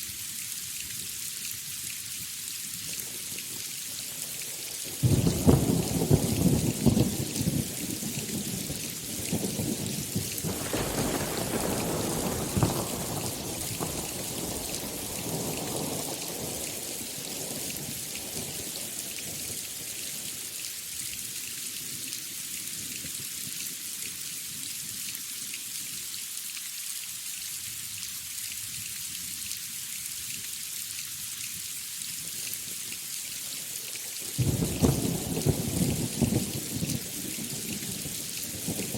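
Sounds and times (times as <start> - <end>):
heavy rain: 0.0 - 38.9
thunder rumbling: 9.7 - 16.6
loud thunderclap: 10.4 - 16.0, 34.4 - 36.5.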